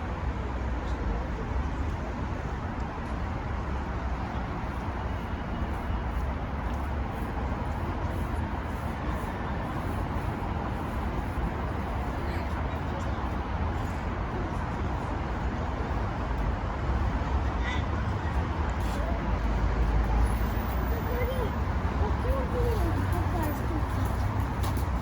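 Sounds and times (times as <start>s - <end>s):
road traffic rumble: 0.0s - 25.0s.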